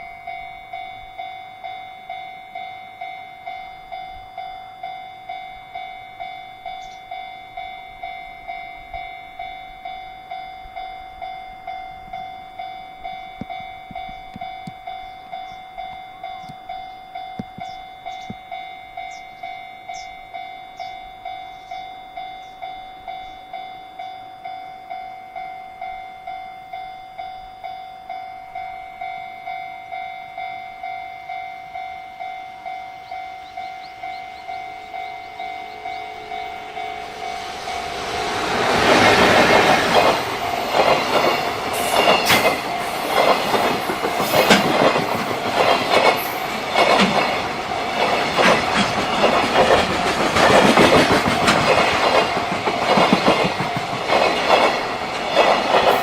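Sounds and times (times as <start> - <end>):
level crossing warning bell: 0.0 - 56.0
train wheels clattering on rails: 12.6 - 20.1, 34.1 - 56.0.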